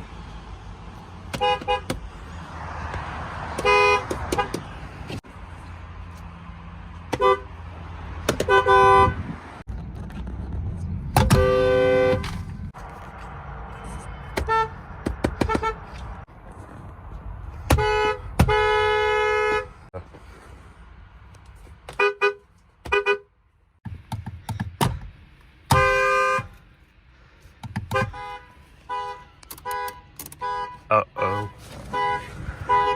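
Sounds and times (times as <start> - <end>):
two-tone car horn honking: 8.4 - 9.3, 11.3 - 12.3, 17.7 - 19.8, 28.0 - 32.9.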